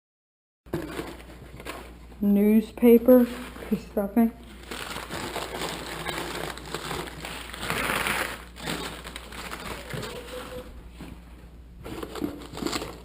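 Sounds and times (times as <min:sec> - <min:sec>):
newspaper rustling and crackling: 0:03.2 - 0:10.8, 0:11.8 - 0:13.0.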